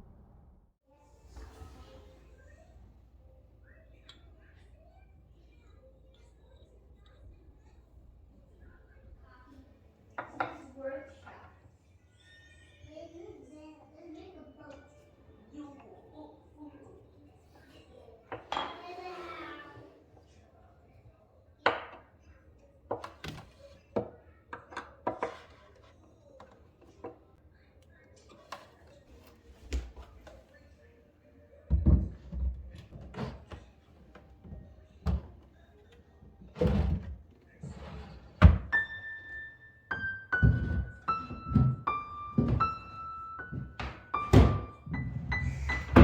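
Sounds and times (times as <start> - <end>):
soft piano music: 38.7 - 46.0.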